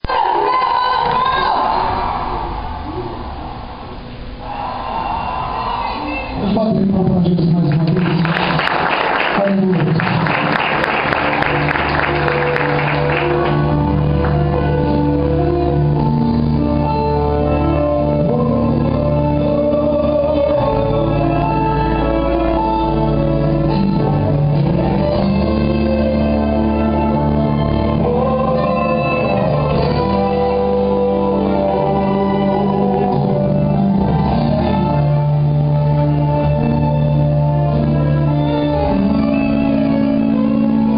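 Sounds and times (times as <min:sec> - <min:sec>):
crowd noise in a hall: 0:00.0 - 0:40.9
sustained keyboard chords: 0:06.4 - 0:40.9
steady bass: 0:10.8 - 0:40.9.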